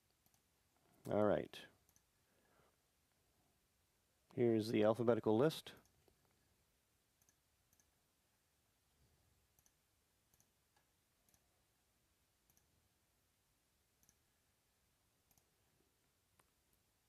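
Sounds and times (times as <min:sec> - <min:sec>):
computer mouse clicks: 0:00.1 - 0:00.5, 0:01.8 - 0:02.1, 0:07.2 - 0:07.9, 0:09.5 - 0:11.5, 0:12.4 - 0:12.7, 0:14.0 - 0:14.2, 0:15.3 - 0:15.5.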